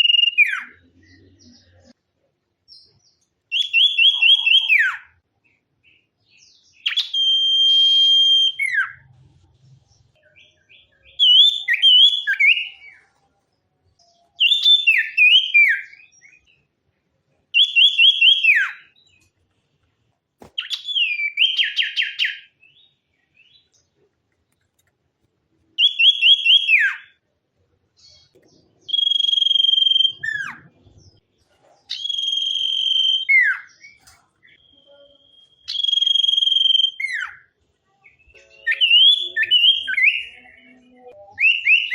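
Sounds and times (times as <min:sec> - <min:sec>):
songbird whistling: 0:00.0 - 0:00.8, 0:03.5 - 0:05.1, 0:06.7 - 0:09.0, 0:10.4 - 0:13.0, 0:14.0 - 0:16.5, 0:17.6 - 0:19.2, 0:20.6 - 0:22.8, 0:25.8 - 0:27.2, 0:28.8 - 0:30.7, 0:31.9 - 0:37.4, 0:38.6 - 0:41.9.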